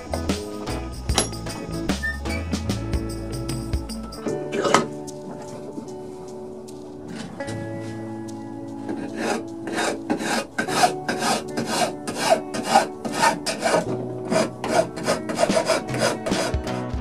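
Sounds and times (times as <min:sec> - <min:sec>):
sanding wood by hand: 0:08.8 - 0:16.8.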